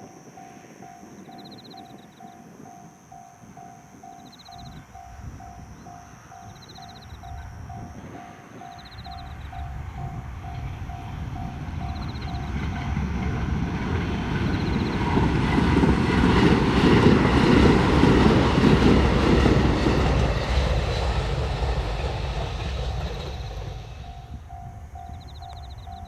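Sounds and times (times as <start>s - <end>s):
crossing warning chime: 0.0s - 26.0s
train wheels rumbling and clattering: 6.5s - 26.0s.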